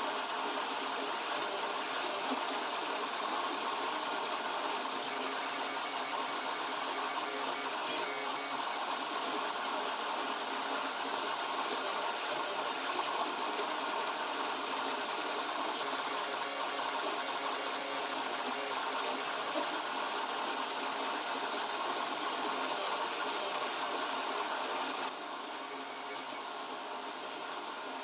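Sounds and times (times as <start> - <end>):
stepper motors whirring: 0.6 - 26.6.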